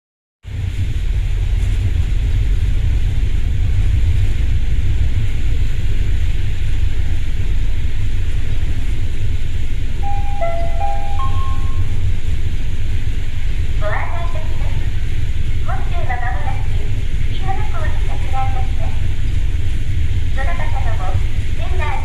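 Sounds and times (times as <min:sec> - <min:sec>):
wind buffeting microphone: 0:00.5 - 0:10.0
low rumble: 0:00.5 - 0:22.0
short clear chime tones: 0:10.0 - 0:12.1.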